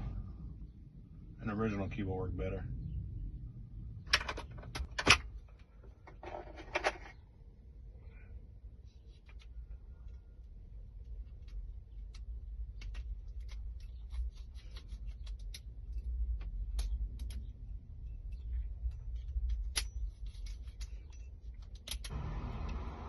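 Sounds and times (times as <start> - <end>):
steady low rumble: 0.0 - 23.0
small metal clicks and taps: 9.2 - 22.1.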